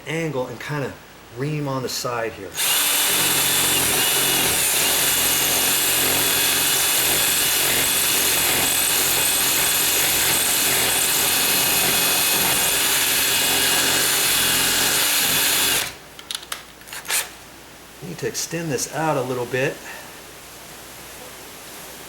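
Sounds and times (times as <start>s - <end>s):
electric drill reaming metal: 2.6s - 16.0s, 16.8s - 17.4s.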